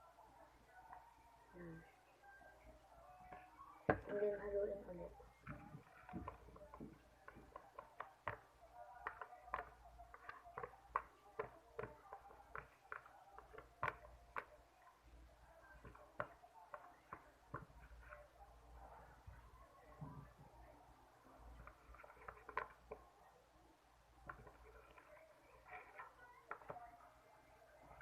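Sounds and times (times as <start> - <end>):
slime being stirred: 5.4 - 19.3, 21.4 - 23.2, 24.0 - 28.0.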